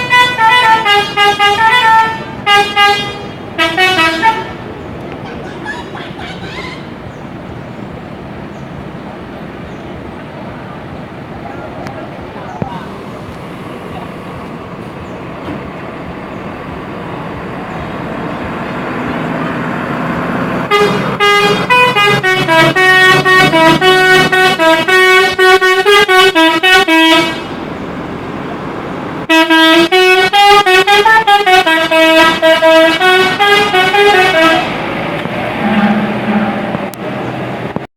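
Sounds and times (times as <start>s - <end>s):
bus horn playing a tune: 0.0s - 4.7s, 20.6s - 27.6s, 29.3s - 34.9s, 35.5s - 37.0s
road and engine noise: 0.0s - 37.9s.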